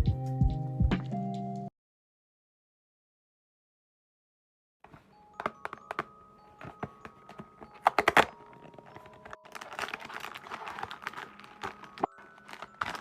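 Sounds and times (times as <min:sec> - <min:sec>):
packaging rustling: 0:04.9 - 0:13.0
small items clicking and tapping: 0:04.9 - 0:13.0.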